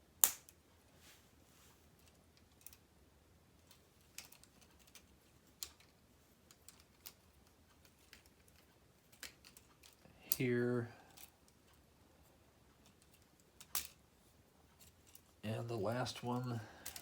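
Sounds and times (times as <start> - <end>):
plastic pieces clicking: 3.6 - 10.4, 12.8 - 14.0.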